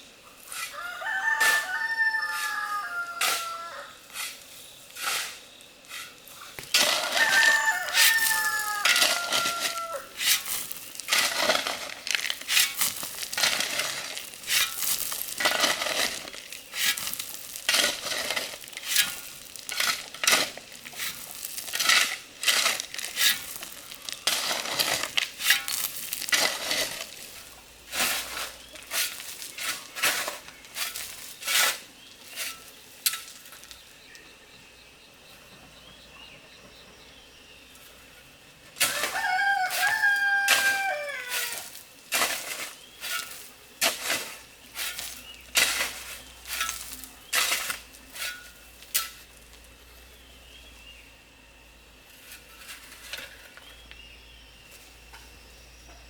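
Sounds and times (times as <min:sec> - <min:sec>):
rooster crowing: 0:00.7 - 0:04.0, 0:06.8 - 0:10.1, 0:38.9 - 0:41.8.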